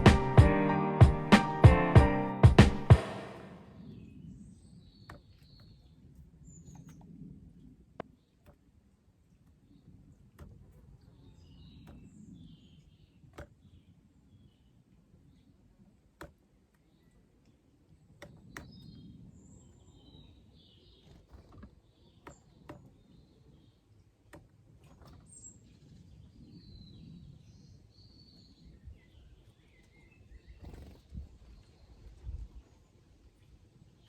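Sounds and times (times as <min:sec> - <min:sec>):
small birds chirping: 0:09.4 - 0:34.0.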